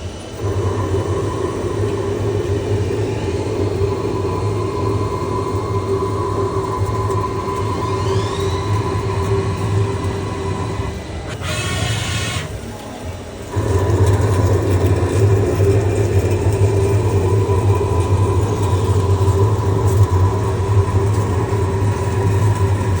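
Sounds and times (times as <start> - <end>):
lathe mechanical hum: 0.0 - 23.0.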